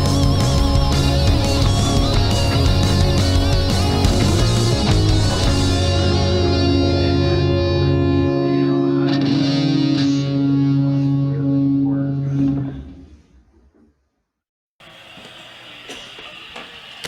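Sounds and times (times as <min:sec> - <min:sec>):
rock music with distorted guitar: 0:00.0 - 0:12.3.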